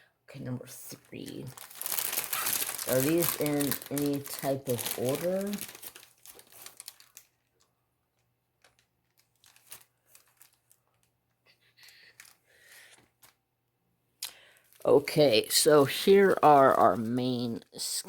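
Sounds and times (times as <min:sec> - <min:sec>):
plastic packets crinkling: 0:00.9 - 0:11.2, 0:11.8 - 0:13.4, 0:14.2 - 0:17.5.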